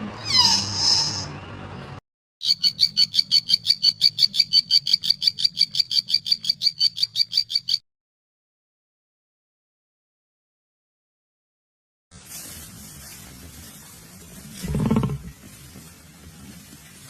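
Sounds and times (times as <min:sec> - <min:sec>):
animal trilling call: 0:00.2 - 0:01.3.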